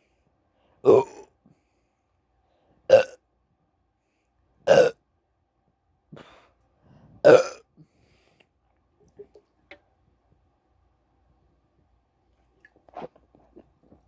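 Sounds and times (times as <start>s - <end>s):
man burping: 0.9s - 1.3s, 2.9s - 3.2s, 4.7s - 5.0s, 7.2s - 7.6s.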